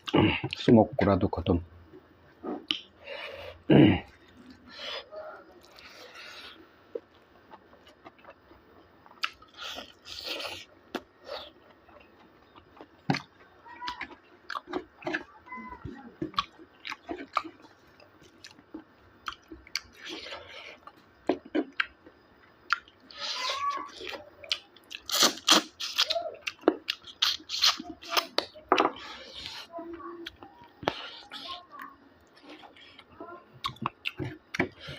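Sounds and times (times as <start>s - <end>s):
wet mouth clicks: 2.5s - 2.9s
person chewing and crunching: 5.6s - 15.6s, 16.2s - 34.9s.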